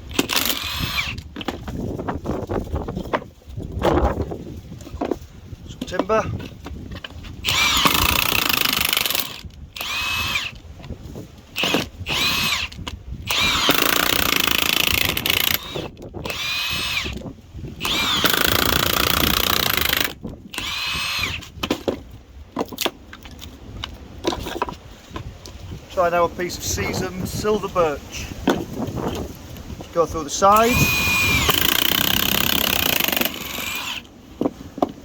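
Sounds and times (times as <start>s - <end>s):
impact wrench driving screw into wood: 0.0s - 1.8s, 7.3s - 10.6s, 11.5s - 23.0s, 30.5s - 34.5s.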